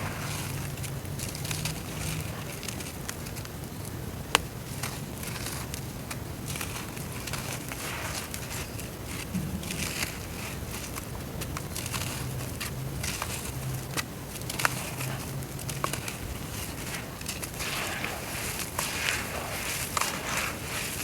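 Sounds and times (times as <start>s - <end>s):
dirt crumbling in water: 0.0s - 3.3s, 4.8s - 21.0s.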